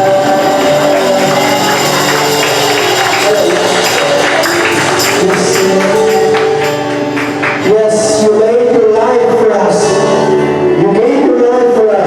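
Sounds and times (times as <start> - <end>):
bright shaken percussion: 0.0 - 6.9
held instrumental notes: 0.0 - 11.7
person singing: 0.0 - 12.0.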